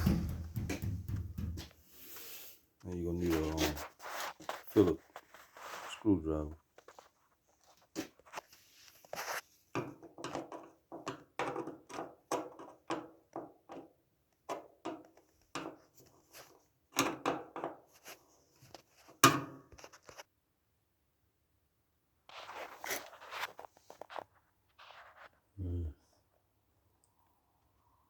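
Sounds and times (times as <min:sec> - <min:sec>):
loud knock: 0:00.0 - 0:01.7.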